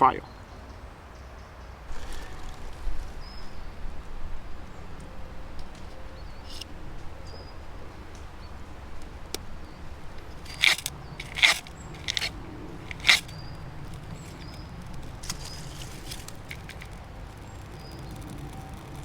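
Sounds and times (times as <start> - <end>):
handling clicks and rustles: 10.2 - 19.0
harsh scraping strikes: 10.2 - 19.0.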